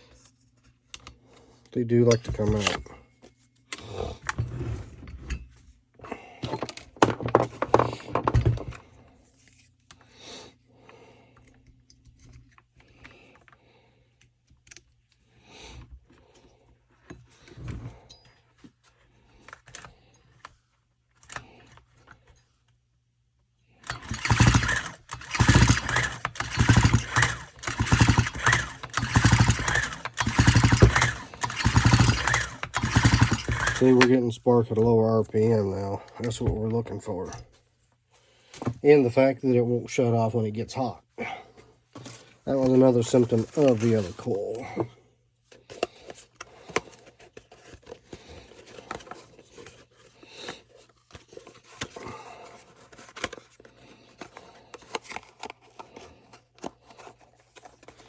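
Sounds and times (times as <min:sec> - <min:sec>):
parts clicking and rattling: 0:02.0 - 0:03.0, 0:05.2 - 0:08.8, 0:23.8 - 0:34.9, 0:45.6 - 0:58.0
recoil starter rasping: 0:23.8 - 0:34.1.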